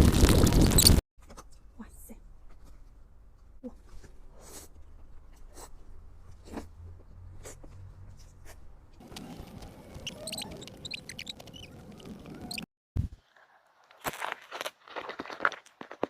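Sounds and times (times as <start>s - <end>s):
short high squeaks: 9.1s - 12.7s.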